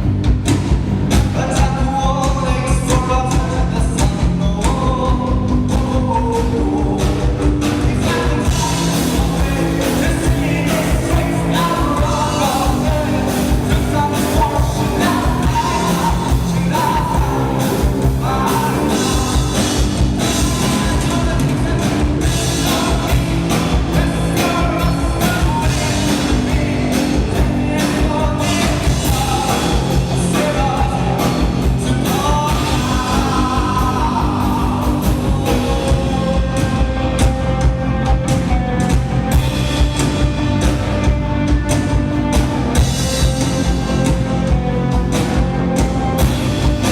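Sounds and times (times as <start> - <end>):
live rock band: 0.0 - 46.9
singer's vocals: 1.1 - 37.8.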